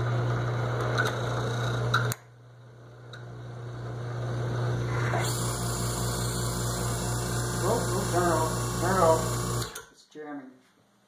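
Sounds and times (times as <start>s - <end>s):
key cutting machine humming: 4.8s - 9.8s.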